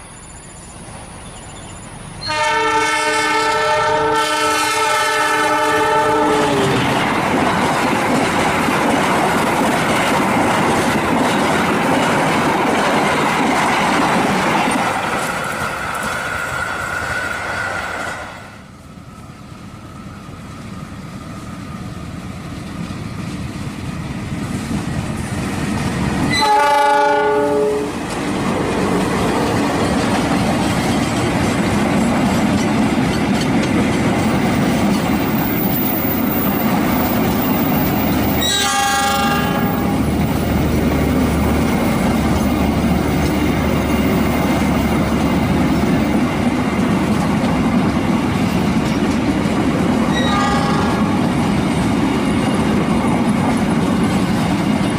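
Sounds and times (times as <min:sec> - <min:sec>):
train rumbling past on rails: 0:00.0 - 0:54.9
locomotive horn: 0:02.2 - 0:06.8, 0:26.3 - 0:28.0, 0:38.2 - 0:40.0, 0:50.1 - 0:51.2.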